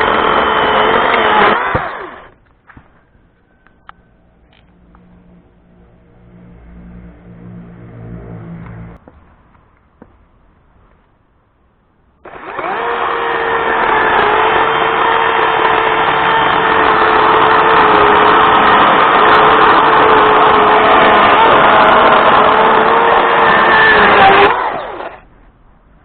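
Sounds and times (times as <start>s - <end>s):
electric chainsaw running: 0.0s - 2.3s, 12.3s - 25.2s.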